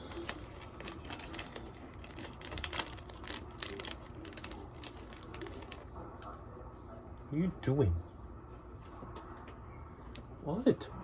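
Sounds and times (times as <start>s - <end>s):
snack package crinkling: 0.0s - 6.4s.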